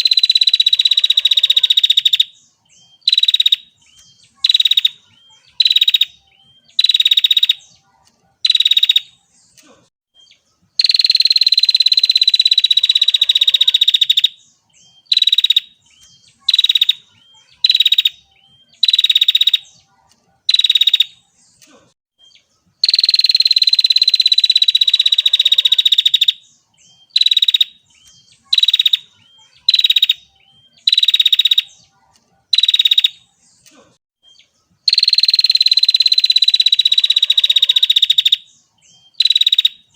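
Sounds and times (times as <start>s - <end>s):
bird buzzy trill: 0.0s - 7.8s, 10.7s - 19.8s, 22.8s - 31.8s, 34.4s - 39.9s.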